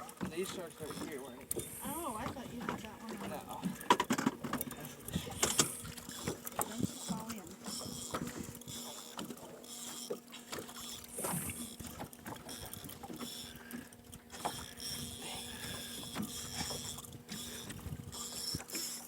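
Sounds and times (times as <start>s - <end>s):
boat motor idling: 0.0s - 19.0s
water sloshing: 0.0s - 19.0s
knocks against hull: 2.2s - 8.6s.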